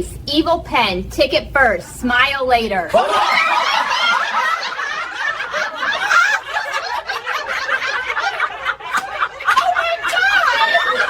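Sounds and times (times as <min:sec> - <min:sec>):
people laughing and giggling: 0:03.0 - 0:11.0.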